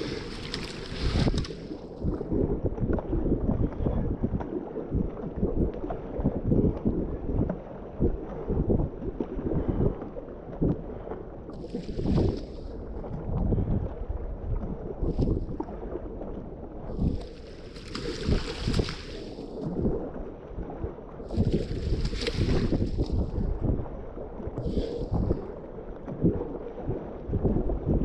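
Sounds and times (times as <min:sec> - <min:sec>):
water splashing: 0:00.0 - 0:02.4, 0:11.6 - 0:13.0, 0:16.9 - 0:20.2, 0:21.2 - 0:26.5
wind buffeting microphone: 0:00.0 - 0:28.0.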